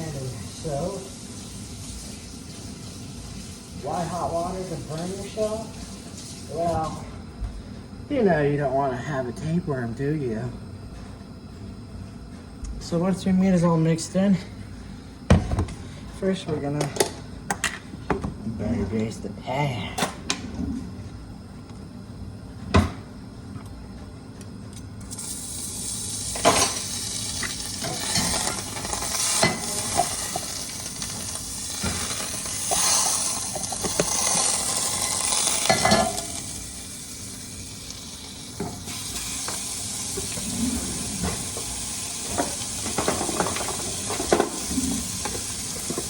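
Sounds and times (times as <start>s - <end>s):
grease sizzling in a frying pan: 0.0s - 7.0s, 25.0s - 46.0s.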